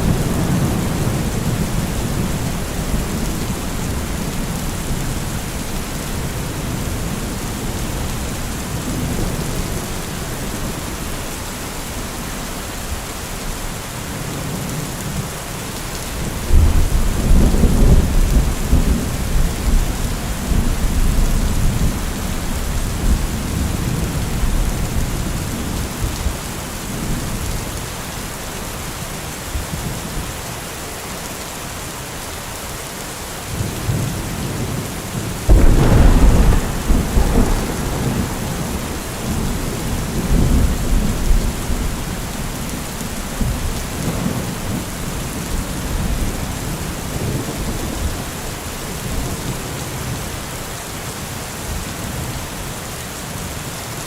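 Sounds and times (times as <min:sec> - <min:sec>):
thunder rumbling: 0:00.0 - 0:10.8, 0:33.9 - 0:48.3
steady rain: 0:00.0 - 0:54.0.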